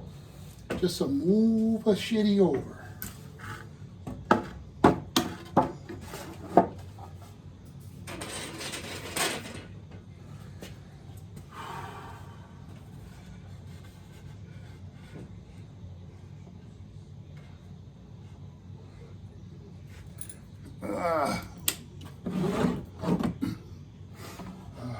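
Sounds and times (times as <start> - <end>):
wood scraping: 22.2 - 23.4.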